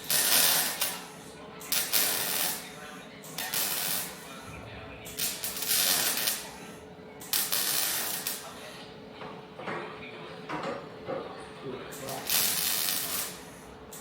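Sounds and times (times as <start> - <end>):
welding arc crackling and hissing: 0.0 - 8.7, 11.9 - 14.0
steady hum: 0.0 - 10.3.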